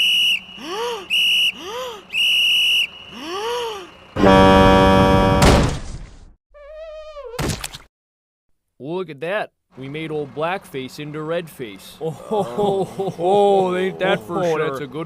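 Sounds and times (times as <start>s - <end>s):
shrill whistle blasts: 0.0s - 3.3s
loud steady horn blast: 4.2s - 5.6s.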